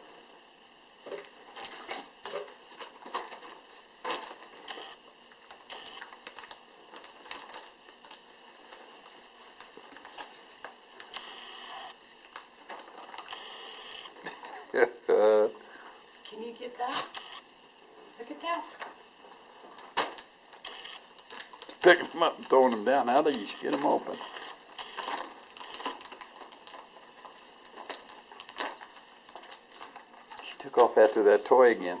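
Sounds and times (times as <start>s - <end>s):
gift wrapping crinkling: 5.3s - 11.2s, 19.4s - 32.0s.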